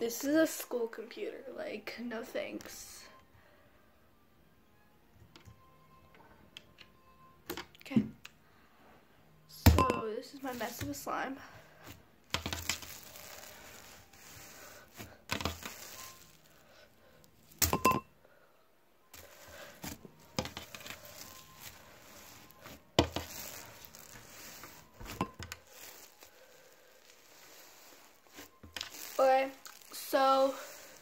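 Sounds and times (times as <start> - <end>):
sticky pops and crackles: 12.3 - 16.5.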